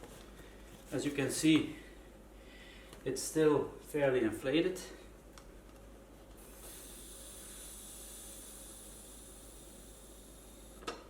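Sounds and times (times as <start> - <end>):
air hissing out of inner tube: 6.4 - 10.8.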